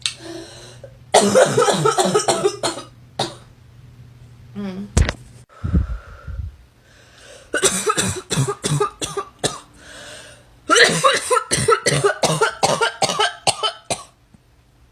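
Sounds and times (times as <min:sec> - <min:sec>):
girl coughing harshly: 0:01.1 - 0:03.5, 0:07.6 - 0:09.7, 0:10.7 - 0:14.2.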